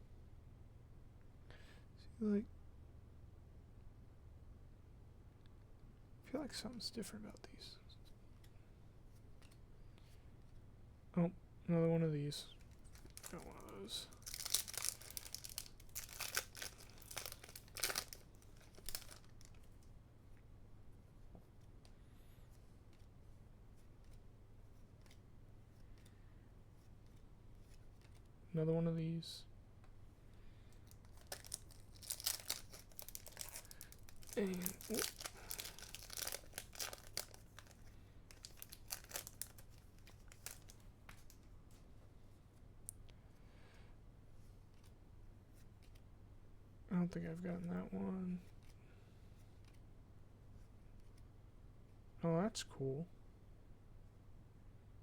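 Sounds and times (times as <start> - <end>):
cards and foil wrapper crinkling: 12.5 - 19.9, 30.7 - 41.4.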